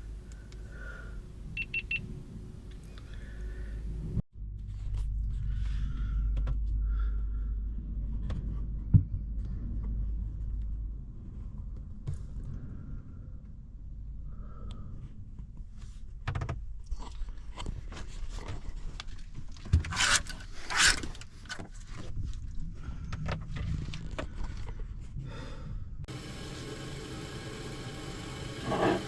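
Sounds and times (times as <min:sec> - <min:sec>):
low steady rumble: 0:00.0 - 0:12.0, 0:25.7 - 0:29.0.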